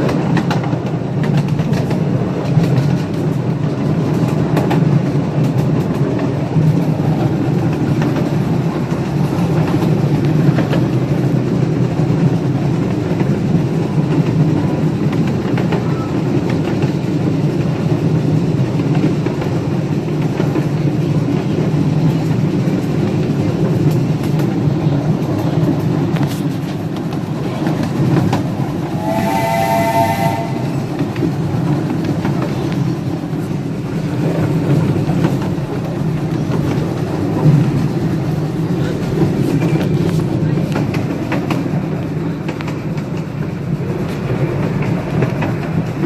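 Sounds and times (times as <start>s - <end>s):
riding cars rumbling on track: 0.0s - 46.0s
steam whistle blast: 28.8s - 31.0s.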